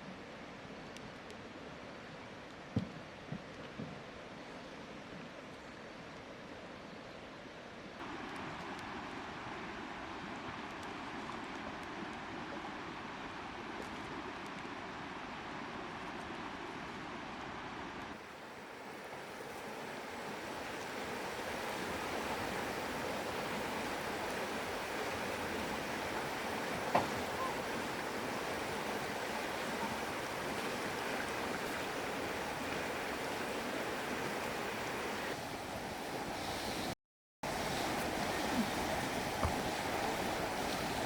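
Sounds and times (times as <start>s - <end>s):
water flowing: 18.2s - 41.0s.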